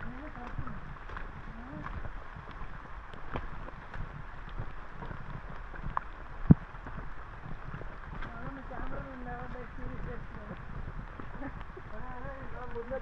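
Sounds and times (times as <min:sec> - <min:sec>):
rain: 0:00.0 - 0:13.0
wind noise on microphone: 0:00.0 - 0:13.0.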